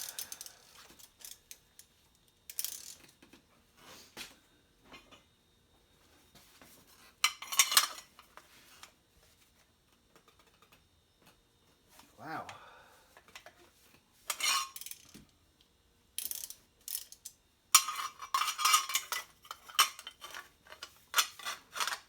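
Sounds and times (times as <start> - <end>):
metal tools clinking on engine parts: 7.2 - 8.4, 14.3 - 15.2, 16.2 - 22.0.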